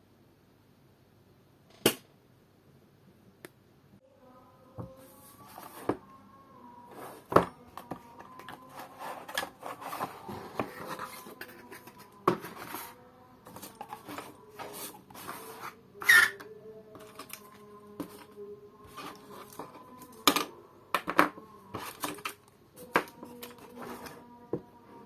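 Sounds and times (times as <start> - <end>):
hands handling keyboard and packaging: 6.9 - 16.2, 17.0 - 24.2.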